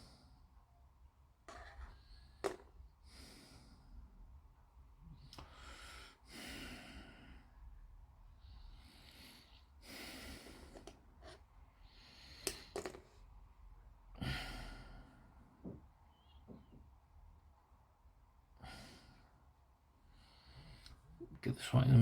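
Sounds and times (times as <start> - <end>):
soft breathing close to microphone: 5.0 - 13.0, 18.6 - 21.2.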